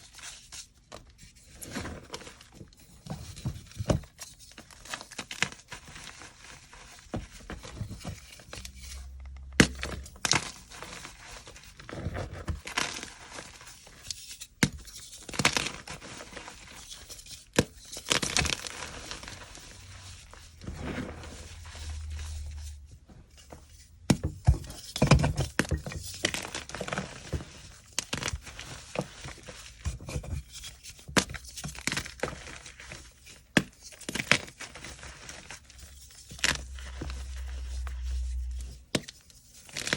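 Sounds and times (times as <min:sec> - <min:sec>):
chalk crunching and crumbling: 0:10.3 - 0:39.9.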